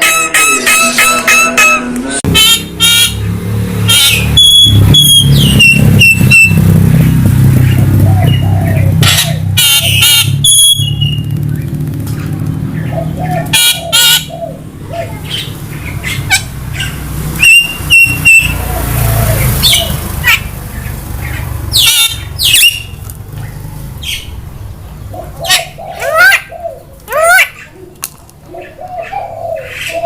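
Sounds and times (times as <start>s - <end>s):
bird squawks and whistles: 0.0s - 3.2s, 3.9s - 6.6s, 9.0s - 11.2s, 17.4s - 18.6s.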